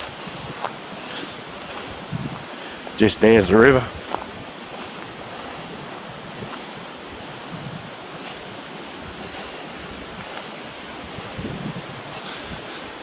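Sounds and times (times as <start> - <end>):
bright hiss: 0.0 - 13.0
faint ticks: 9.3 - 10.6, 11.2 - 12.9.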